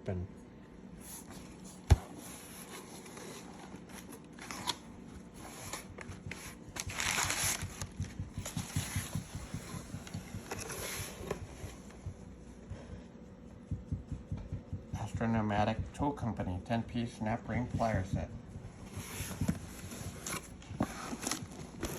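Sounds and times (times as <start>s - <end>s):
packaging crackling and rustling: 1.6s - 11.4s, 19.2s - 21.9s.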